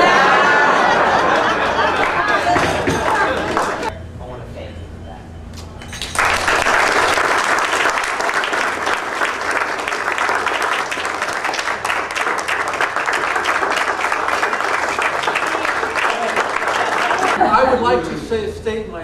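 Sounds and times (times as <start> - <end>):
audience applauding: 0.0 - 3.9, 6.0 - 17.4.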